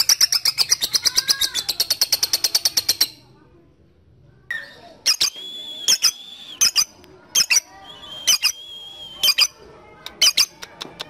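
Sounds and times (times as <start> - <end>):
lovebird chirping: 4.5 - 9.6
high whistling tone: 5.1 - 6.8, 7.8 - 9.4.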